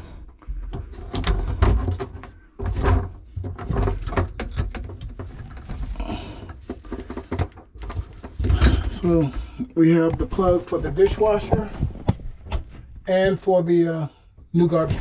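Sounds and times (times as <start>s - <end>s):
dull thumps: 0.2s - 13.4s.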